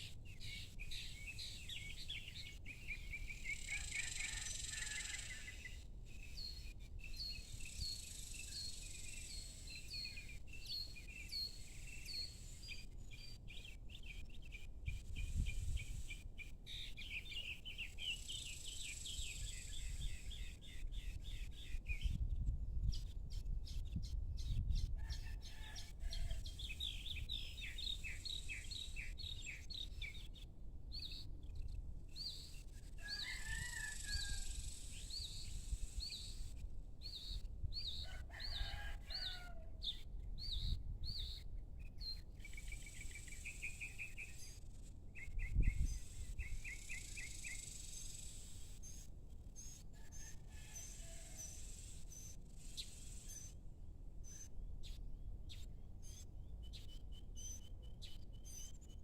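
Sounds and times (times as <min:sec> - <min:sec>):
rooster crowing: 0:03.7 - 0:05.6, 0:25.0 - 0:26.5, 0:33.0 - 0:34.5, 0:38.0 - 0:39.8, 0:50.0 - 0:51.6
small birds chirping: 0:39.8 - 0:50.1.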